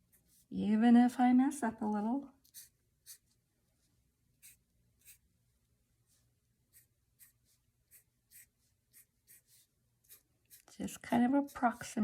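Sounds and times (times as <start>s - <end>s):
pencil scratching on paper: 2.4s - 3.4s, 4.4s - 5.2s, 6.7s - 12.0s.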